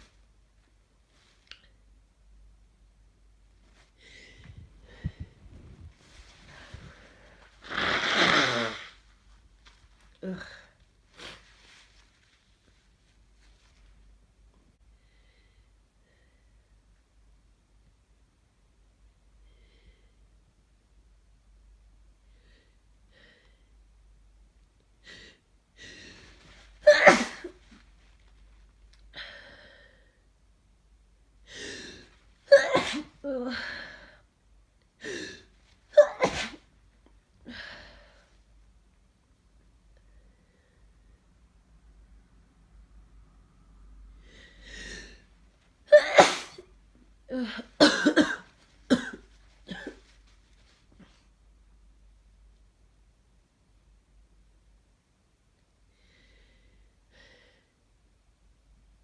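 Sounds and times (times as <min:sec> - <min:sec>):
soft breath out: 0:03.8 - 0:07.6
person gasping breath: 0:04.0 - 0:05.6, 0:55.9 - 0:57.8
person sneezing: 0:07.6 - 0:09.0, 0:26.8 - 0:27.6, 0:31.6 - 0:33.7, 0:35.0 - 0:36.7, 0:45.9 - 0:46.7
person coughing: 0:26.8 - 0:27.6, 0:32.5 - 0:33.2, 0:45.9 - 0:46.6, 0:47.3 - 0:50.1.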